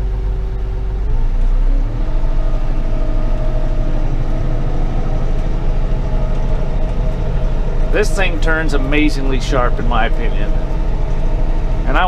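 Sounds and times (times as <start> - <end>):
diesel engine revving: 0.0 - 12.0.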